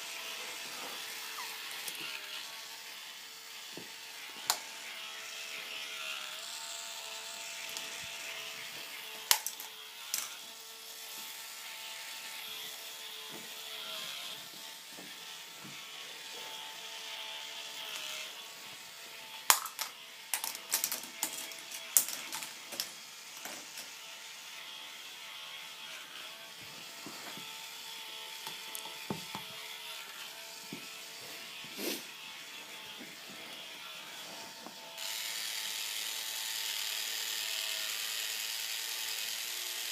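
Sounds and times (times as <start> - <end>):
plastic balls clicking on tracks: 19.5 - 23.6
sharp plastic clacks: 19.5 - 23.9.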